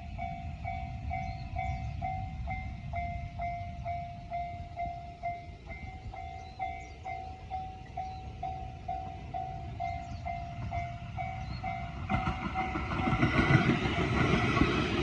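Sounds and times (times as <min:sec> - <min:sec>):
crossing warning bell dinging: 0:00.0 - 0:15.0
train rumble and wheel clatter: 0:00.0 - 0:15.0.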